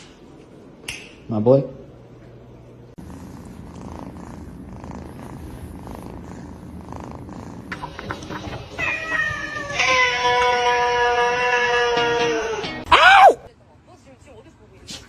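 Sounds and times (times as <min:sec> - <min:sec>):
cat purring: 0:03.0 - 0:09.9.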